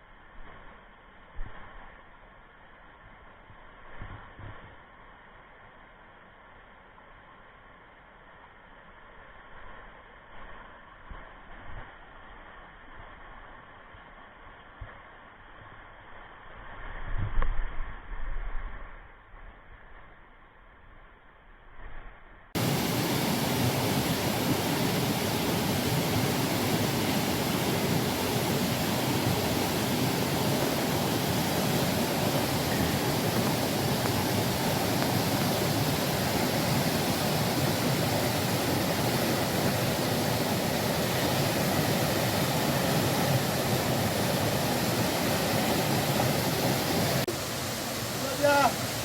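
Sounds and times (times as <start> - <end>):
waterfall rushing: 22.6 - 49.0.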